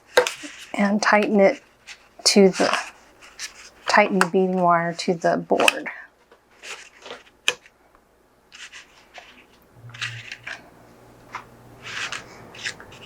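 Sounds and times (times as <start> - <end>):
faint low hum: 9.5 - 13.0.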